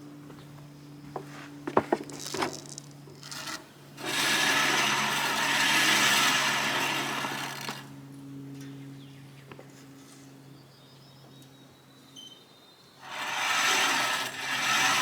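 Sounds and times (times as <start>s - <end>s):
rasping scraping against wood: 4.0s - 7.9s, 13.0s - 15.0s.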